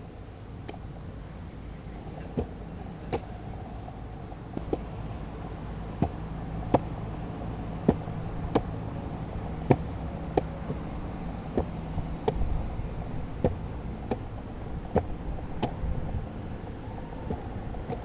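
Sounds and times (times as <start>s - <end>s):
low hum: 3.5s - 17.9s
sharp knocks: 7.8s - 8.8s.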